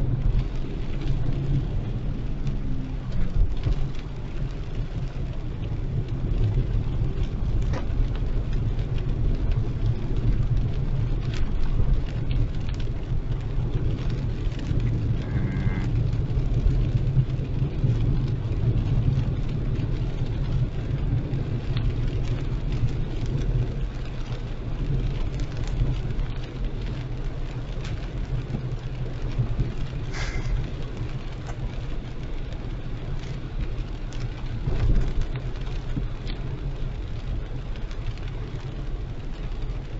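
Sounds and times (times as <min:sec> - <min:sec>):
car engine and tyres on wet road: 0:00.0 - 0:39.9
raindrops ticking: 0:00.0 - 0:39.9
heavy rain hissing: 0:29.4 - 0:31.4.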